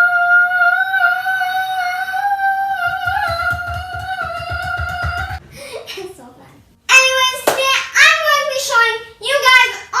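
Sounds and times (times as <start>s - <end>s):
soft rapid low thumps: 2.8s - 5.4s.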